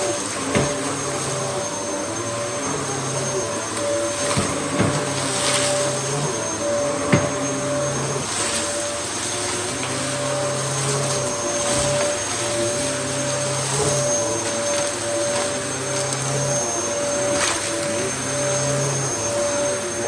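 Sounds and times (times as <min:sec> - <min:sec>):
vacuum cleaner motor whine: 0:00.0 - 0:20.0.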